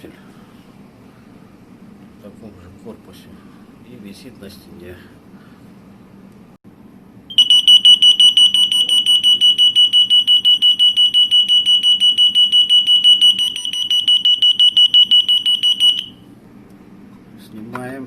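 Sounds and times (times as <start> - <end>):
shrill pulsing alarm siren: 7.3 - 16.2.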